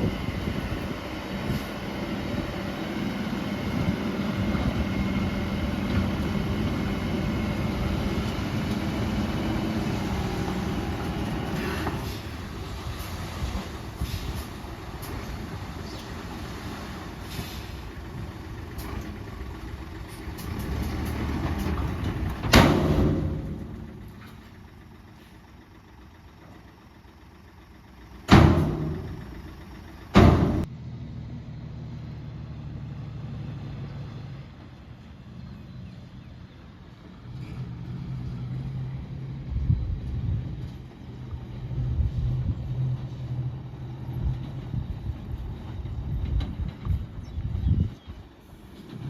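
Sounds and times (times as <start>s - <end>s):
heavy machinery diesel engines: 0.0s - 49.0s
loud sharp bangs: 28.3s - 29.4s, 30.2s - 30.7s.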